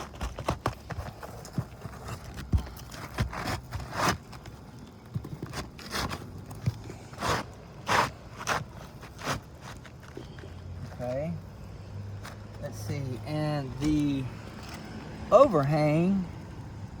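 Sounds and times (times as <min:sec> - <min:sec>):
roof shingles scraping and rustling: 0:00.0 - 0:11.0.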